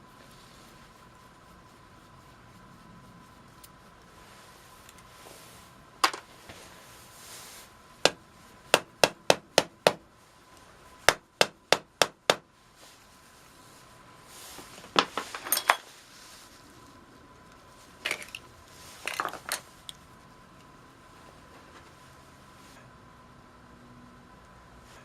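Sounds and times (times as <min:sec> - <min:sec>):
metal clinks: 0:15.3 - 0:15.9.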